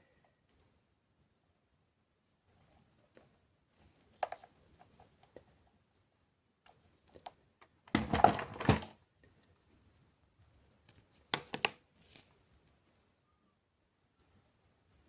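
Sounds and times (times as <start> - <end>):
cable and plastic parts rustling: 7.9 - 9.0.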